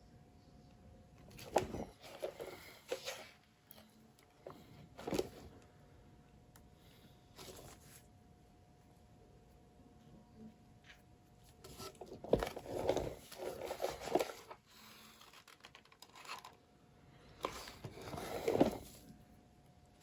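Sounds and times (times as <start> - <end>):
scraping and rustling handling: 1.2 - 5.6, 7.3 - 8.1, 10.8 - 16.6, 17.3 - 19.3.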